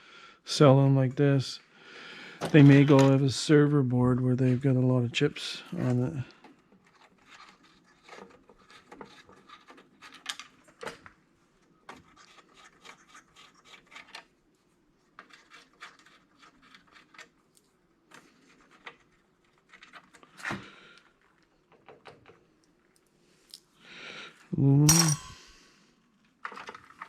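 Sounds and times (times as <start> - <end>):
clicks taps and rubbing of parts: 21.0 - 23.6.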